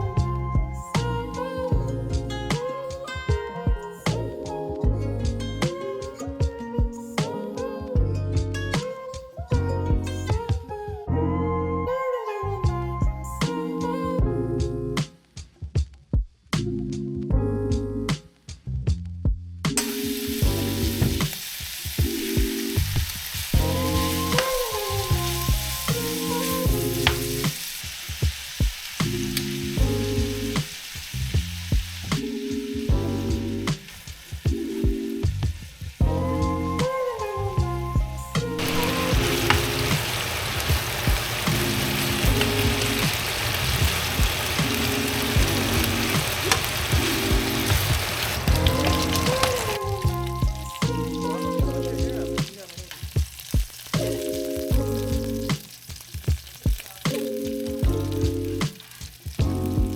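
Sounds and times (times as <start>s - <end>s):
background music: 0.0s - 15.5s, 16.6s - 18.8s, 19.7s - 59.9s
food sizzling in a pan: 19.8s - 59.9s.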